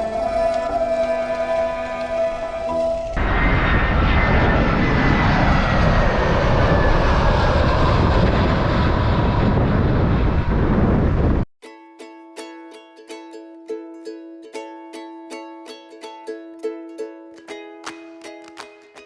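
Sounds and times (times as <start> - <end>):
wind rushing on microphone: 0.0 - 11.5.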